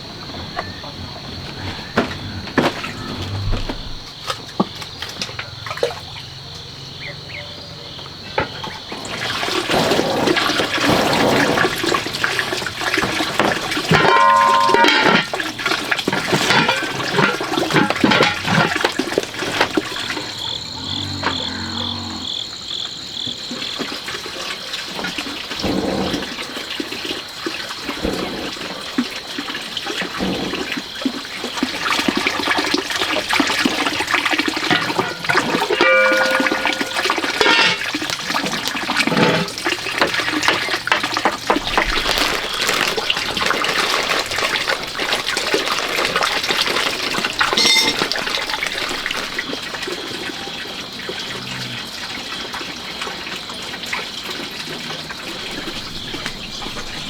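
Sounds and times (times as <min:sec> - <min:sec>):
water splashing and sloshing: 0:00.0 - 0:07.3, 0:08.0 - 0:57.0.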